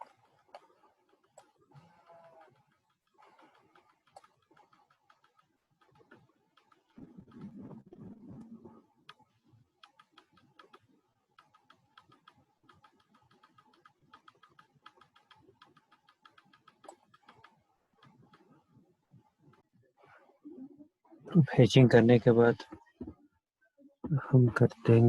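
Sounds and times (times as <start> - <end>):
keyboard and mouse clicking: 0.0 - 7.7, 8.4 - 18.6.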